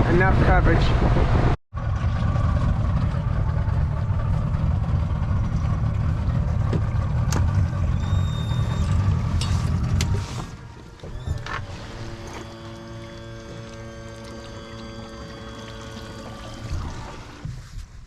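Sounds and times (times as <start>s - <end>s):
outboard motor running: 1.7s - 17.7s
faint high whistle: 8.0s - 9.0s.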